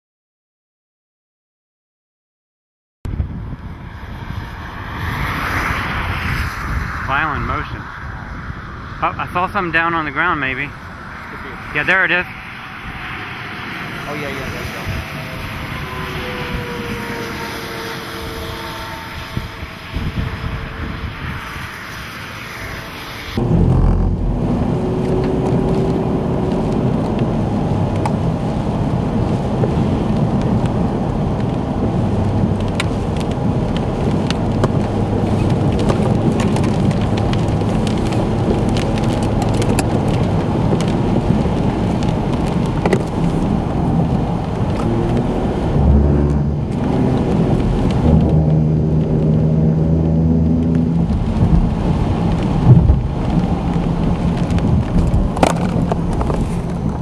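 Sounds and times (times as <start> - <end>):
raindrops ticking close by: 25.0 - 45.4, 46.3 - 57.0.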